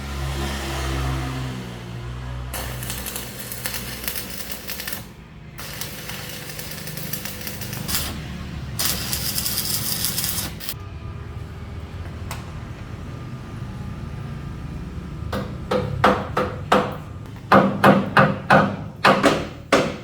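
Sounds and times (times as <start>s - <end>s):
electric welding arc crackling: 2.5s - 10.8s.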